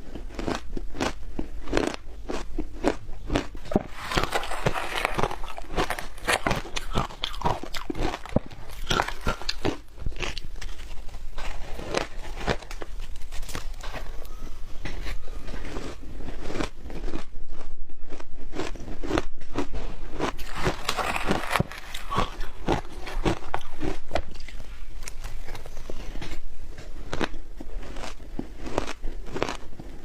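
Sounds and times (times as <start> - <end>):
chewing crunchy shaved ice: 0.0 - 30.0.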